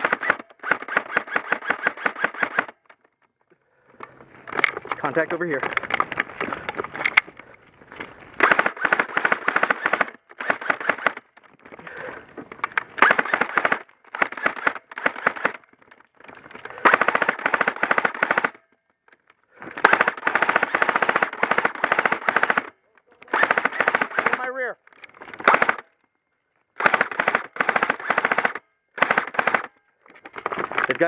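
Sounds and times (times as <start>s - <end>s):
airsoft rifle firing rapid clicks: 0.0s - 3.0s, 8.4s - 11.4s, 12.7s - 15.7s, 16.6s - 18.6s, 19.7s - 24.6s, 25.3s - 25.9s, 26.8s - 30.5s.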